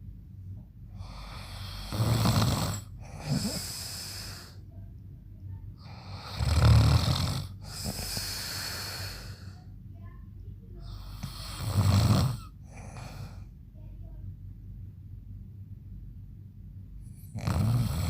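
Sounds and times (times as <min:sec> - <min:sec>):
man snoring loudly: 0:01.0 - 0:04.6, 0:06.0 - 0:09.4, 0:11.1 - 0:13.1, 0:17.3 - 0:18.0
hissing breath: 0:01.0 - 0:04.7, 0:07.5 - 0:09.7.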